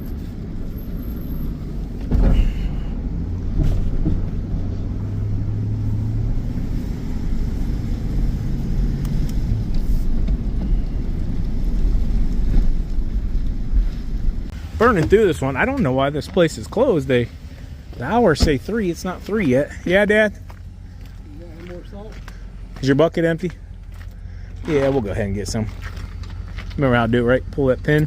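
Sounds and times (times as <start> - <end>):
truck engine rumbling: 0.0 - 28.0
thump: 2.0 - 2.6, 3.5 - 4.3.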